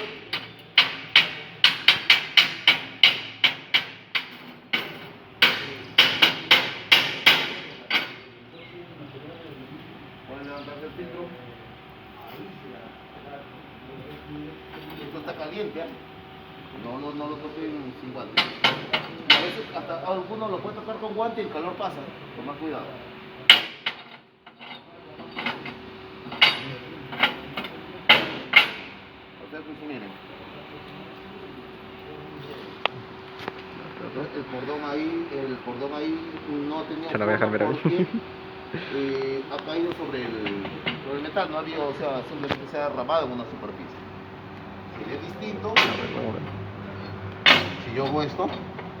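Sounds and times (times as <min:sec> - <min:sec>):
chipping hammer striking steel: 0:00.0 - 0:08.2.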